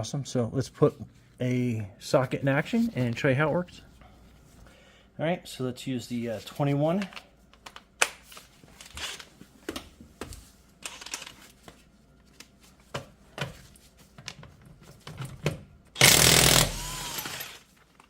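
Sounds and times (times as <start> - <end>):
impact wrench burst: 16.0 - 17.6.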